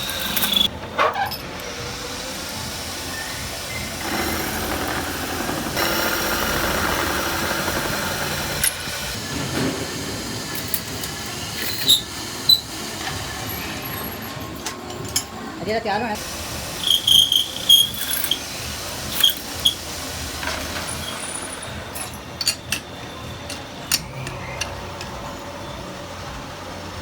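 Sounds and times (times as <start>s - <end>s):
workshop machinery running: 0.0s - 27.0s.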